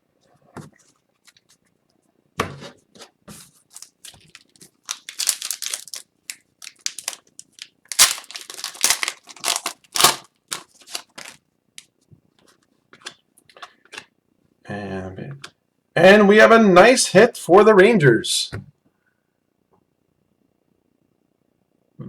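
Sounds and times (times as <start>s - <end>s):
card pack wrappers crinkling: 3.5s - 11.4s.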